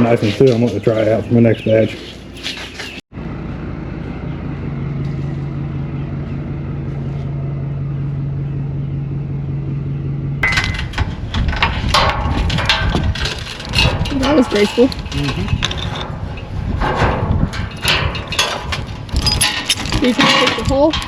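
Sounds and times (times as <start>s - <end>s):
engine running steadily: 3.1s - 17.1s
sharp clanks and knocks: 10.4s - 21.0s.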